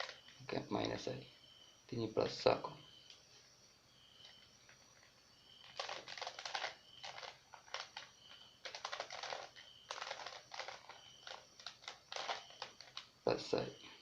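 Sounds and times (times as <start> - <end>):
plastic puzzle cube clicking: 5.6 - 13.1.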